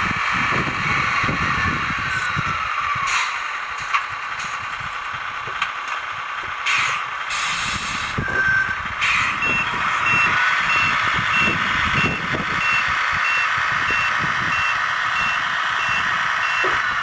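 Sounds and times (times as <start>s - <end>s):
loud continuous rumbling: 0.0s - 17.0s
high electronic beeps: 9.4s - 16.8s.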